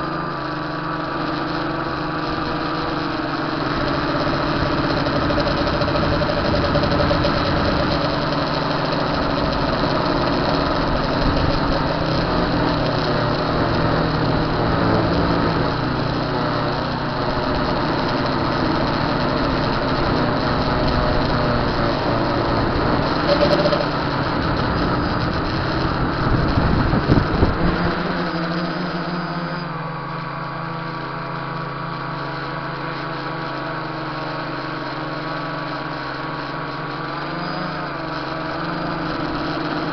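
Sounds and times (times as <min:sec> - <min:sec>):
drone motors whirring: 0:00.0 - 0:39.9.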